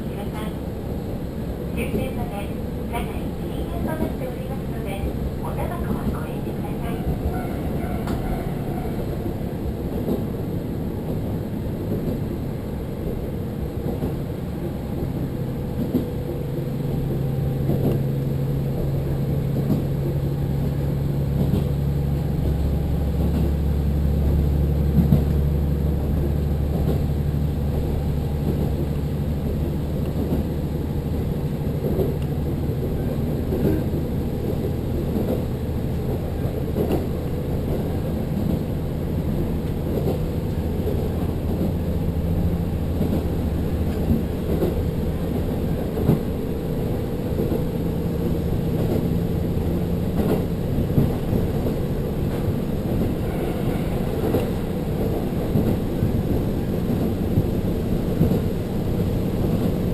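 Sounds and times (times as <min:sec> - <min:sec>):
railcar engine drone: 0:00.0 - 0:59.9
wheel-on-rail rumble: 0:00.0 - 0:59.9
light clicks over rail: 0:13.8 - 0:23.6, 0:24.2 - 0:29.1, 0:29.9 - 0:30.6, 0:31.7 - 0:32.8, 0:33.4 - 0:38.7, 0:39.4 - 0:53.2, 0:54.1 - 0:59.9.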